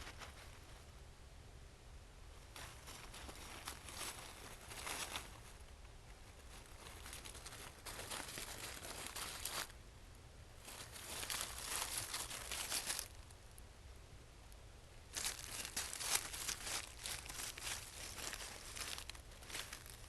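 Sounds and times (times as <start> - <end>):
crackling rustle: 0.0 - 1.0, 2.3 - 9.8, 10.5 - 20.0
steady low hum: 0.0 - 20.0.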